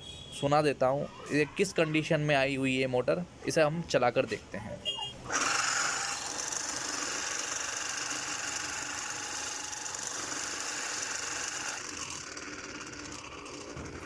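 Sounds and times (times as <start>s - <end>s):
air cooler motor harsh mechanical noise: 5.2s - 14.0s.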